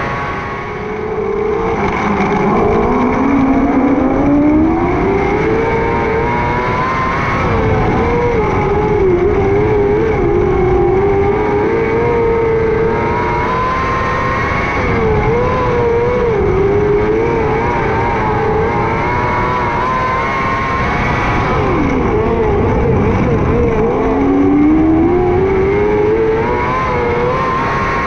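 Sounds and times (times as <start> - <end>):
racing car engine revving: 0.0 - 28.0.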